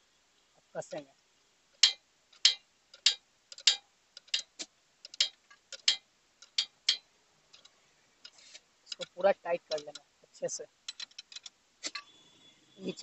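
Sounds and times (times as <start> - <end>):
ratchet wrench clicking: 1.8 - 7.0.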